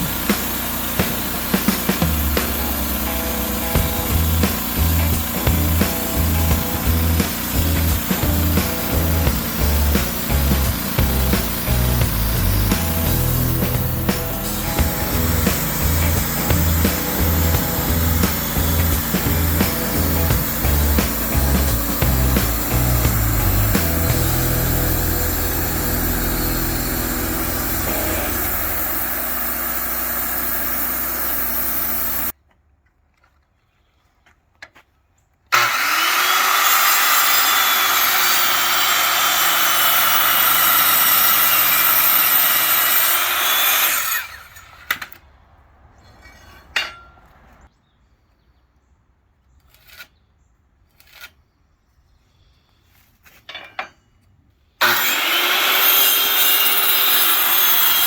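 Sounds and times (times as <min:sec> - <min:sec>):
power saw cutting wood: 0:00.0 - 0:32.4, 0:35.5 - 0:45.2, 0:54.8 - 0:58.0.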